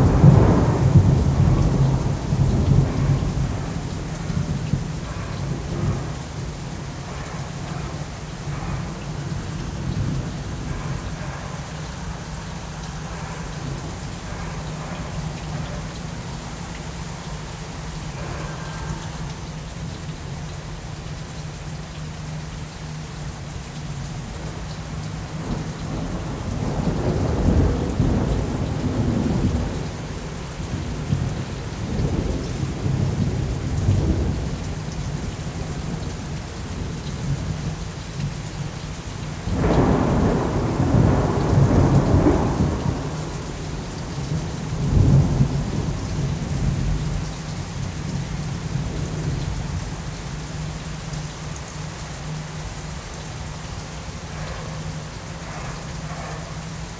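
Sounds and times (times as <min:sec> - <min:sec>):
thunder clap: 0:00.0 - 0:19.2, 0:39.5 - 0:47.2
rolling thunder: 0:00.0 - 0:20.1, 0:25.2 - 0:37.6, 0:39.4 - 0:50.5
steady rain: 0:00.0 - 0:56.9.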